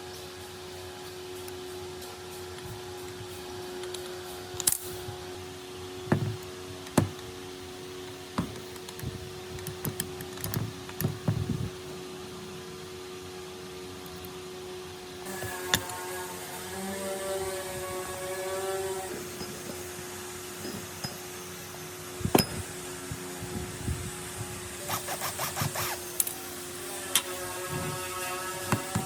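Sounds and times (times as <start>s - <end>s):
steady hum: 0.0s - 29.0s
metal parts and tools knocking: 20.6s - 21.3s.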